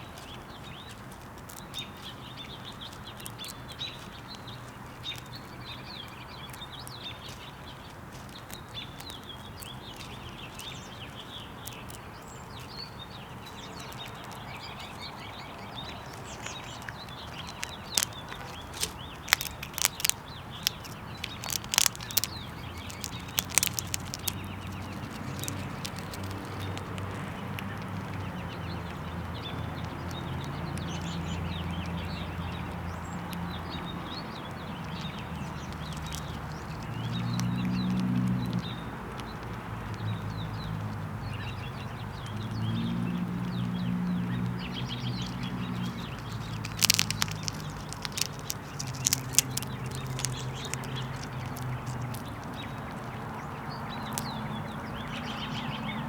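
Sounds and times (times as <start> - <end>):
small birds chirping: 0.0 - 56.0
sharp clicks and taps: 16.1 - 28.3, 45.1 - 53.2.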